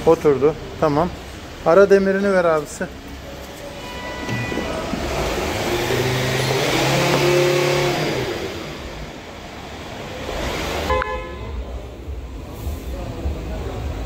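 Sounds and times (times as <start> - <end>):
vehicle driving past: 3.7 - 10.9.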